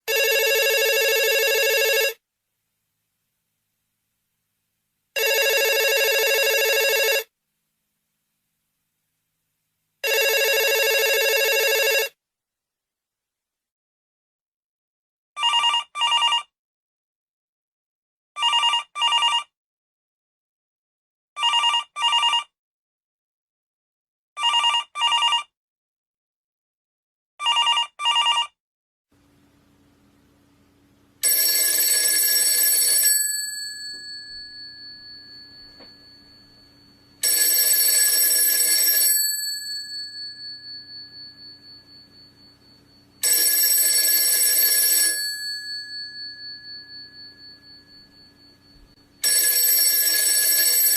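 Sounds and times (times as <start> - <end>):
telephone double rings: 0.1 - 2.2, 5.2 - 7.3, 10.0 - 12.2, 31.2 - 50.9
telephone long rings: 0.1 - 2.2, 5.2 - 7.3, 10.0 - 12.2, 31.2 - 50.9.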